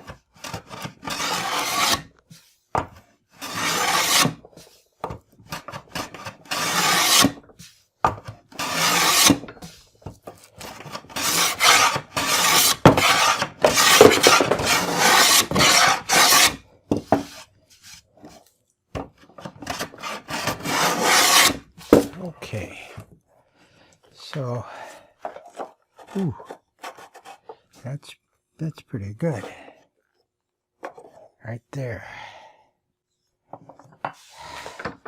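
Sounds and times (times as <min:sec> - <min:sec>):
hand tool rasping wood: 0:00.0 - 0:02.0, 0:03.4 - 0:04.7, 0:05.5 - 0:07.5, 0:08.5 - 0:17.4, 0:19.4 - 0:22.4.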